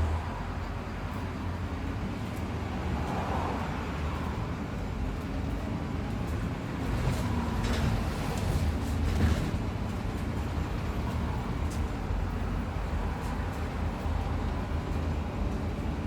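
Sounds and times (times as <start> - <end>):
bus engine and road rumble: 0.0 - 16.0
rattles and knocks of bus body: 4.3 - 16.0.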